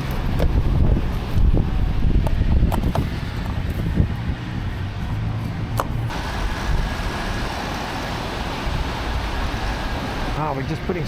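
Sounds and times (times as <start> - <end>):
wind buffeting microphone: 0.0 - 10.9
steady hiss: 6.1 - 11.0.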